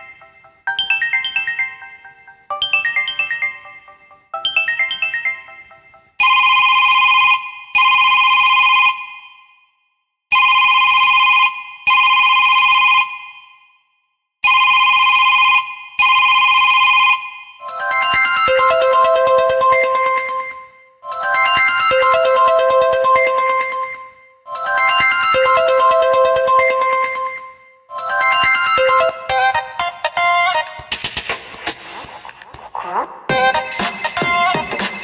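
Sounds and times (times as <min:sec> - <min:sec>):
bell-like ringtone arpeggio: 0:00.0 - 0:08.8, 0:17.6 - 0:31.0
electronic two-tone ring: 0:17.6 - 0:30.7.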